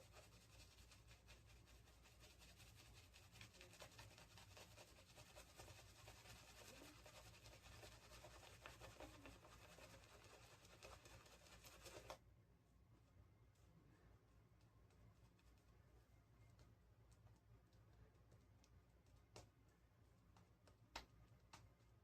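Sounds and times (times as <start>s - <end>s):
shaving brush in lather: 0.0s - 12.2s.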